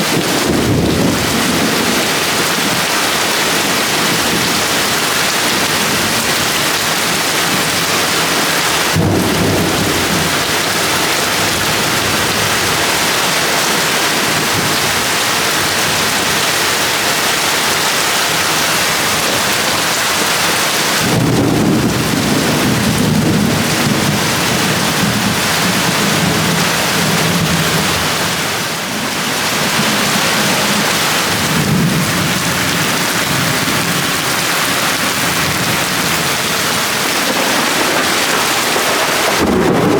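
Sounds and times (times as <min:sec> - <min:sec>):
rumble of thunder: 0:00.0 - 0:02.9, 0:08.9 - 0:13.0, 0:21.0 - 0:28.2, 0:35.2 - 0:39.9
thunder clap: 0:00.0 - 0:15.1, 0:21.0 - 0:39.9
heavy rain pouring: 0:00.0 - 0:39.9.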